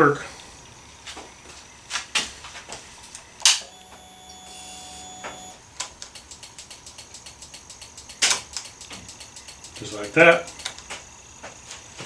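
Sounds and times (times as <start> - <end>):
short steady hum: 3.6 - 11.4
flasher relay clicking rapidly: 5.7 - 11.6
sharp clicks: 5.8 - 11.1.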